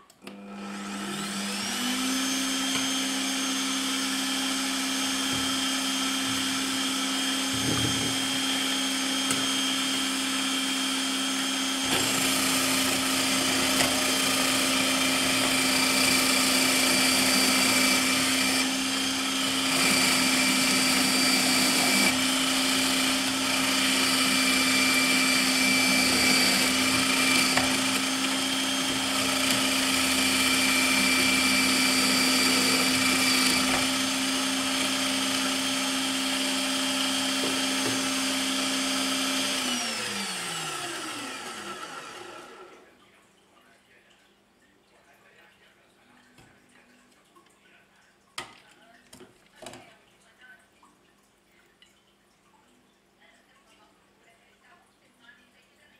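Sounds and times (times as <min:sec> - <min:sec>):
electric meat mincer motor hum: 0:00.2 - 0:42.9.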